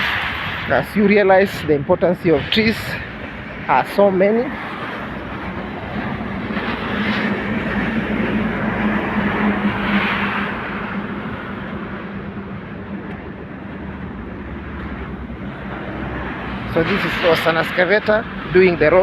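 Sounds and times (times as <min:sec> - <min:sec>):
heavy engine humming: 0:02.8 - 0:17.0.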